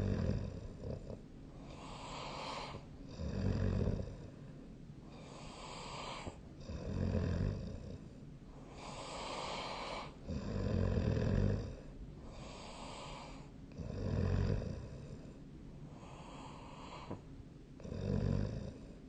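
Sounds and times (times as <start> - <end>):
person snoring: 0.0 - 4.4, 5.1 - 8.1, 8.7 - 15.4, 17.8 - 19.0
breathy hiss: 1.6 - 3.0, 4.1 - 6.4, 8.1 - 10.6, 11.3 - 13.6, 14.8 - 17.3.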